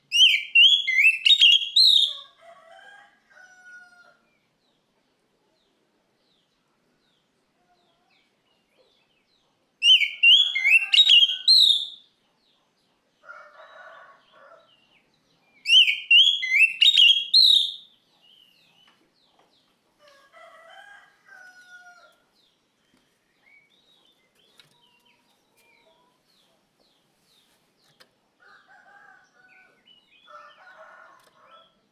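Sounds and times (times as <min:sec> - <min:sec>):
bird singing whistled notes: 0:00.1 - 0:02.2, 0:09.8 - 0:12.1, 0:15.6 - 0:18.0.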